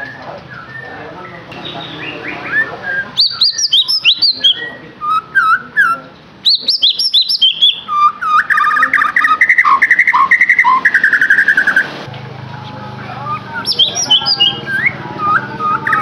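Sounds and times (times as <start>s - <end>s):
songbird whistling song: 0.0s - 12.0s, 13.1s - 16.0s.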